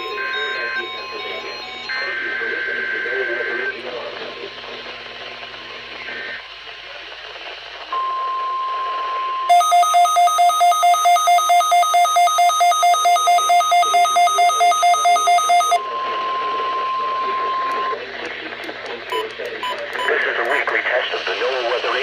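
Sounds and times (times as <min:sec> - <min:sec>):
two-pitch warbling alarm: 0:00.0 - 0:03.7, 0:09.2 - 0:18.0.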